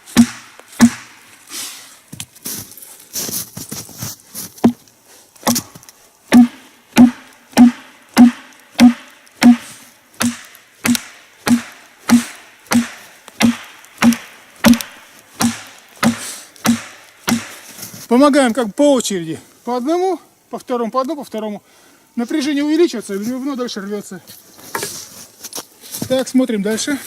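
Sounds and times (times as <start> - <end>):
blows driving wedges into log: 0.0 - 1.9, 4.5 - 18.0.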